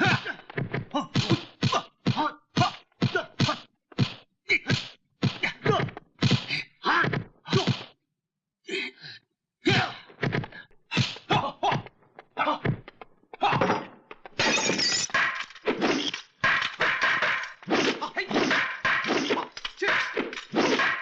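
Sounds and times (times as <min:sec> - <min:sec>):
fight hits and whacks: 0:00.0 - 0:08.0, 0:13.5 - 0:21.0.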